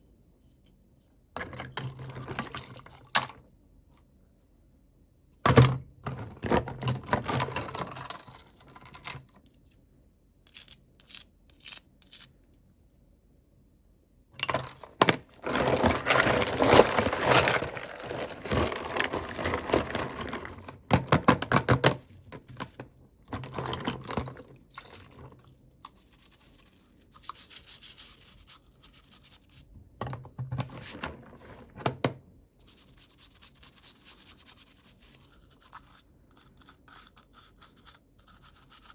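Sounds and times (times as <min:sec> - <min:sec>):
packaging tearing: 0:15.4 - 0:20.5
unwrapping toy packaging: 0:15.4 - 0:20.9.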